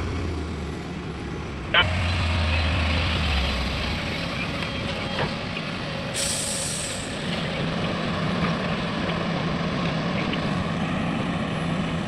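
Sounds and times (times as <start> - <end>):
heavy diesel engine running: 0.0 - 12.0
high hiss: 6.2 - 7.2.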